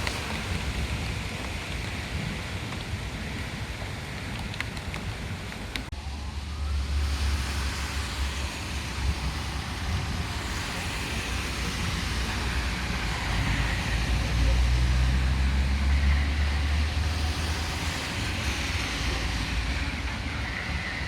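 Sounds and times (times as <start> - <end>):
rain hissing on flooded street: 0.0 - 21.0
traffic rumbling on wet road: 0.0 - 21.0.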